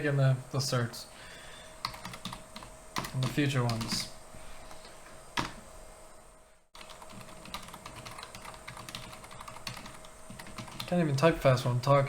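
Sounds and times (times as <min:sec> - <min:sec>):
typing on computer keyboard: 0:06.8 - 0:10.9.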